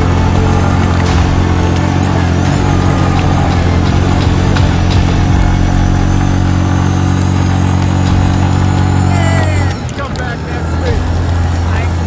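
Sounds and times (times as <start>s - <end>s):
motor engine droning: 0.0s - 12.0s.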